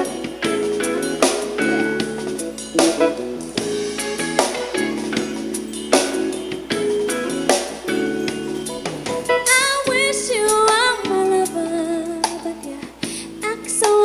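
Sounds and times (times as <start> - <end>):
drum hits: 0.0 - 11.3
soul ballad on small speaker: 0.0 - 14.0
woman singing wordless run: 9.4 - 14.0.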